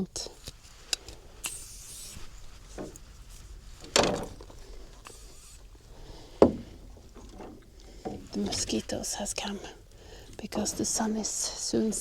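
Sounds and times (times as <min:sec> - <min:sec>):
dull knocks: 0:03.8 - 0:05.0, 0:06.0 - 0:09.0.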